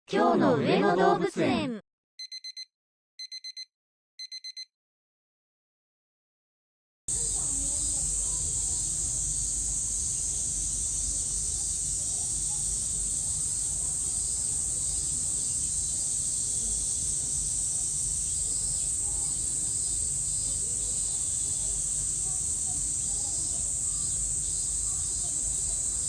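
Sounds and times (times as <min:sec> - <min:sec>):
cicadas shrilling: 0:07.1 - 0:26.0
faint distant voices: 0:07.1 - 0:26.0.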